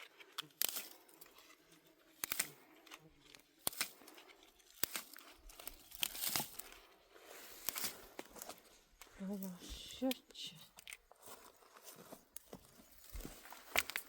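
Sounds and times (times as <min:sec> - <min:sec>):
dry stems snapping: 0:00.0 - 0:06.8, 0:07.6 - 0:09.1, 0:12.4 - 0:14.0
leaves rustling and tearing: 0:00.0 - 0:14.0.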